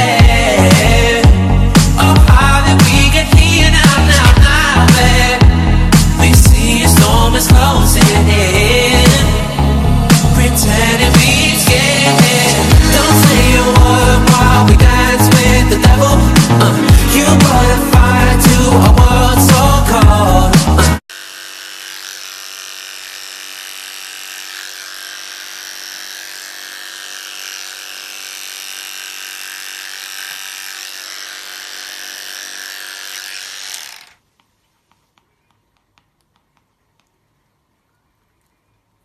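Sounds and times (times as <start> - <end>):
small electric motor whining: 21.1 - 34.2.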